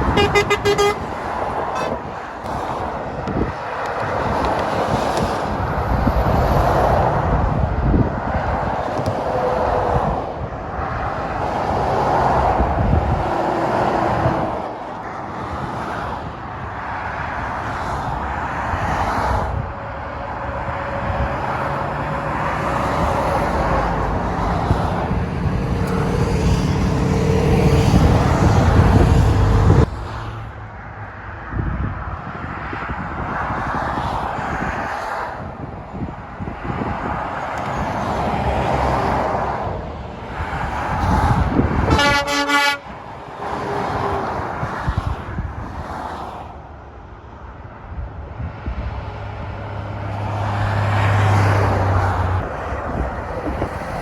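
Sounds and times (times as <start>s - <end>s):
heavy diesel engine: 0.0s - 8.9s, 16.2s - 31.4s
motorway traffic passing: 0.0s - 54.0s.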